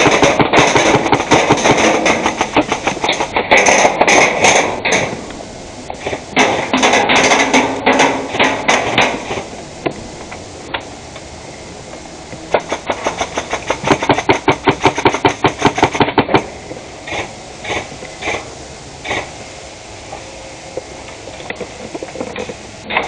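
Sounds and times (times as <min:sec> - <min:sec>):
airsoft gun firing shots: 0:00.0 - 0:05.2, 0:12.5 - 0:16.5.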